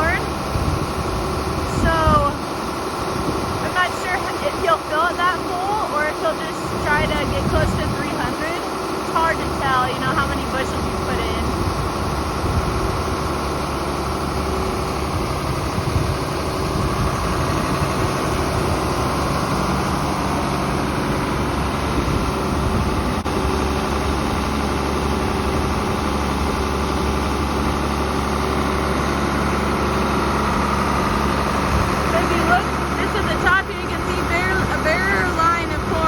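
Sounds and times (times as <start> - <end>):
tractor diesel engine running: 0.0 - 36.0.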